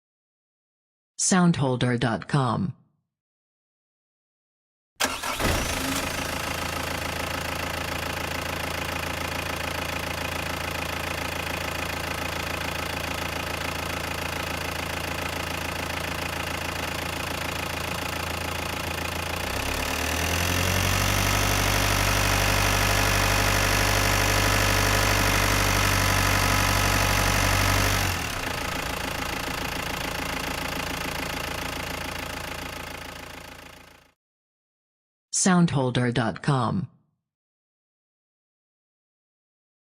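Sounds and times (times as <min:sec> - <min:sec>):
diesel van engine starting and idling: 0:05.0 - 0:34.2.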